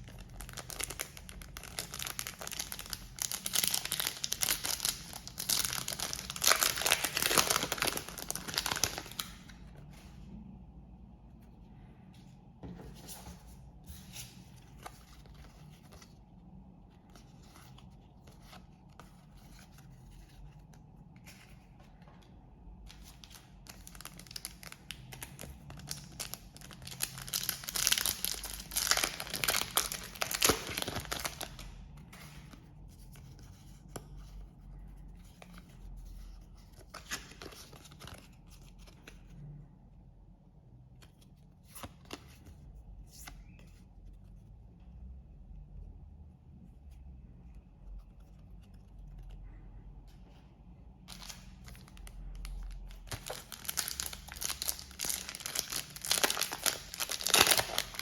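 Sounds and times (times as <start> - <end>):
wrapper tearing and rustling: 0.0 - 9.3, 23.2 - 31.6, 51.1 - 58.0
wrapper crinkling: 0.0 - 9.4, 23.0 - 31.6, 51.1 - 58.0.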